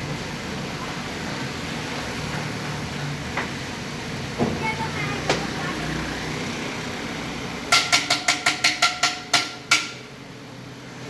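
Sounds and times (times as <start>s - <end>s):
traffic hum: 0.0s - 11.0s
rapid hammering on ringing metal: 7.7s - 10.1s.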